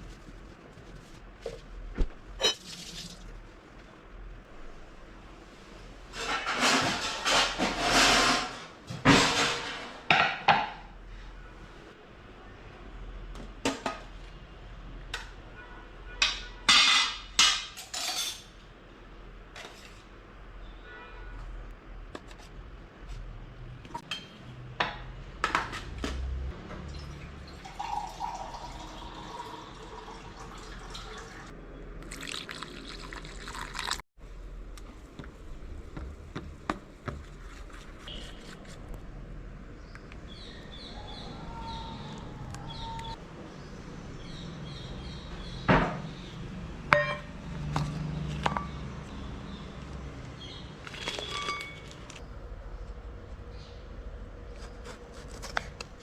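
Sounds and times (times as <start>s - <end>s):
stirring wet batter: 35.2s - 39.0s.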